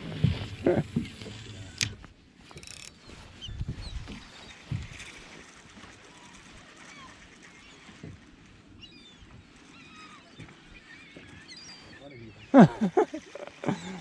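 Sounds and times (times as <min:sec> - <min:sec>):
fishing reel clicking: 0:01.3 - 0:03.0
gulls squealing: 0:09.6 - 0:14.0.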